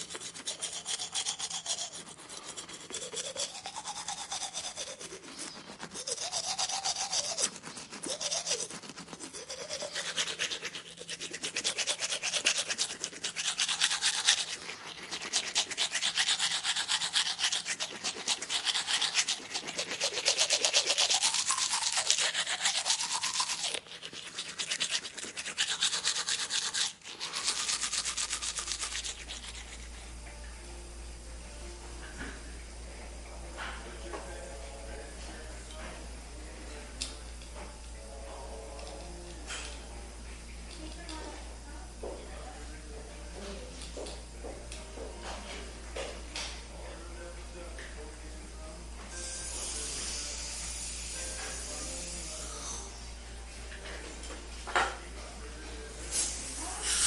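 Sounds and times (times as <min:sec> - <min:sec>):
rapid scrubbing strokes: 0:00.0 - 0:30.2.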